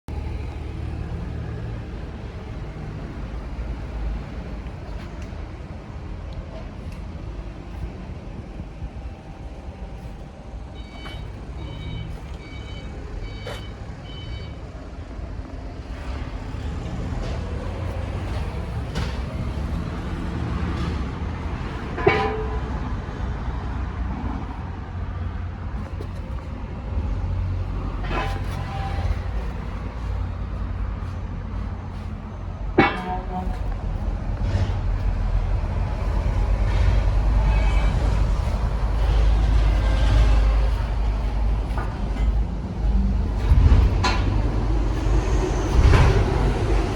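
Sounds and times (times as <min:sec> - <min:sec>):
diesel generator rumbling: 0:00.1 - 0:46.9
sharp metallic clank: 0:21.9 - 0:22.8, 0:32.8 - 0:33.8.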